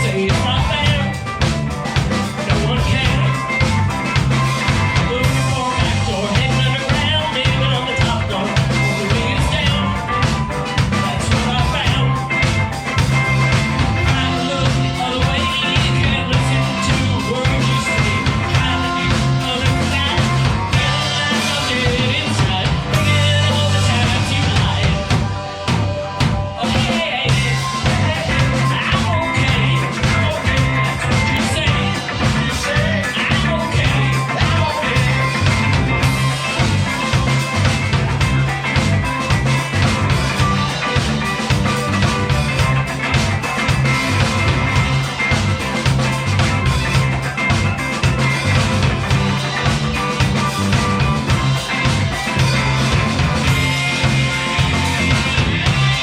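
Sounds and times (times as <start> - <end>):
person singing: 0.0 - 1.4, 2.1 - 3.6, 4.6 - 12.6, 13.8 - 43.1
drum kit beat: 0.0 - 56.0
electric guitar: 0.0 - 56.0
live rock band playing: 0.0 - 56.0
pulsing bass line: 0.0 - 56.0.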